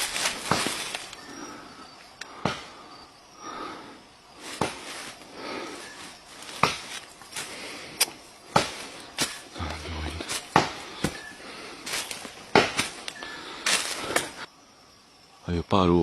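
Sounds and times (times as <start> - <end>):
sharp knocks: 10.5 - 11.2, 12.5 - 12.9.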